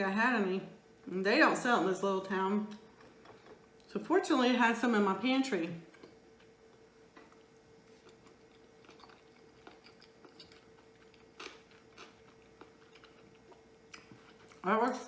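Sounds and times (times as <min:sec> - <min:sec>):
faint hum: 0:00.0 - 0:15.0
chewing close to microphone: 0:05.9 - 0:14.6.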